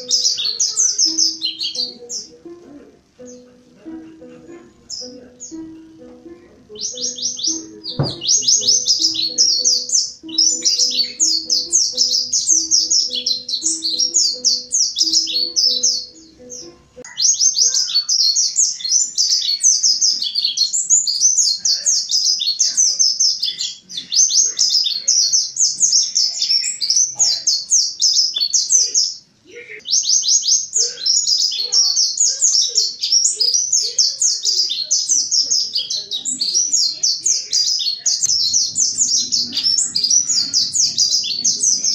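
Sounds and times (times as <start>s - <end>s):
bird twittering song: 0.0s - 2.6s, 3.2s - 41.9s
soft plucked-string music: 0.0s - 17.1s.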